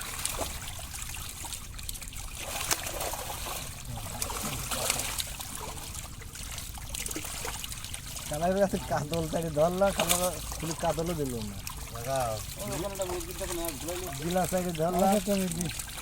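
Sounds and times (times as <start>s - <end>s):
pond water trickling and splashing: 0.0s - 16.0s
short sharp splashes: 0.0s - 16.0s.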